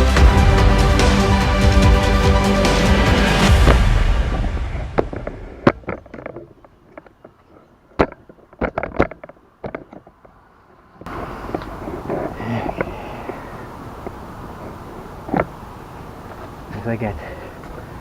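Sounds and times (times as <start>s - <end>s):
background music: 0.0s - 6.0s
steady noisy ambience: 0.0s - 18.0s.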